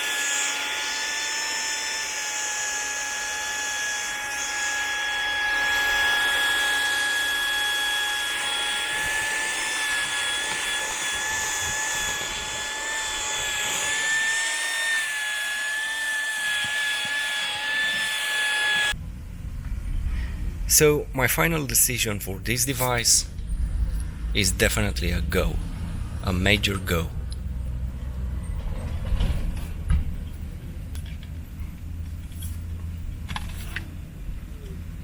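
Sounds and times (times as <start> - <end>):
handheld vacuum cleaner running: 0.0 - 19.0.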